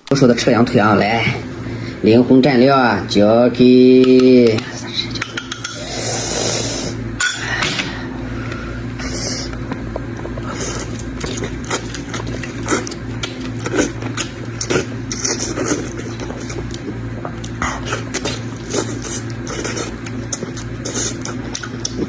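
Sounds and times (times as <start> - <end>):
low hum: 0.0 - 22.0
breathy slurps: 5.7 - 7.0, 8.3 - 22.0
chewing with wet mouth clicks: 9.5 - 22.0.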